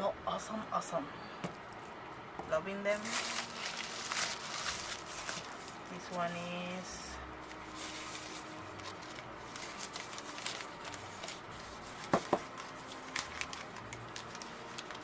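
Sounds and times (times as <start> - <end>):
paper wrapping crinkling and tearing: 2.9 - 6.4, 7.4 - 15.0.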